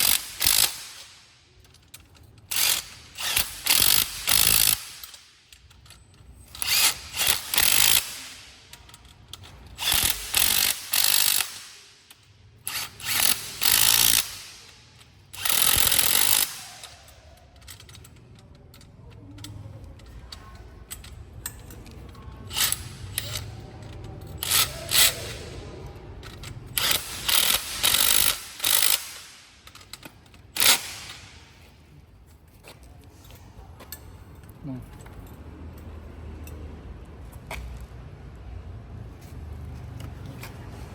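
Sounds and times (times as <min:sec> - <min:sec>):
impact wrench bursts: 0:00.0 - 0:18.1, 0:22.0 - 0:25.6, 0:26.2 - 0:31.7.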